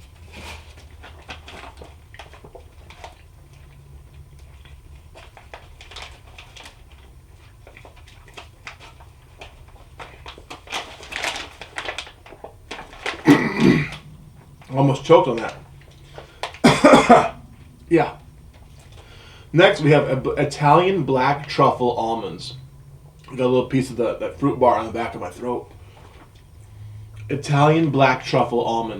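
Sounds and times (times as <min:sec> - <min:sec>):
rough throat sounds: 0:13.2 - 0:14.1, 0:16.6 - 0:18.0
person coughing: 0:13.3 - 0:14.0, 0:16.6 - 0:17.4.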